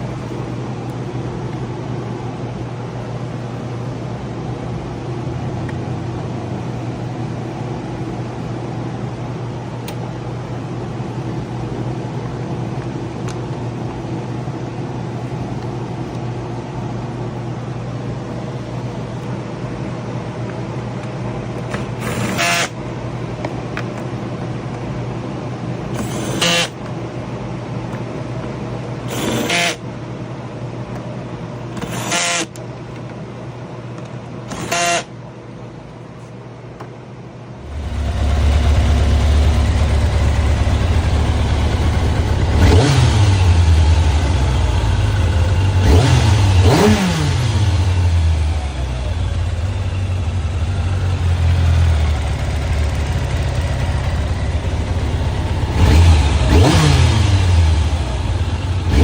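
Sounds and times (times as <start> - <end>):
steady hum: 0.0 - 59.0
motorcycle engine starting and idling: 37.6 - 59.0
engine revs blipped: 37.7 - 48.4, 55.1 - 59.0.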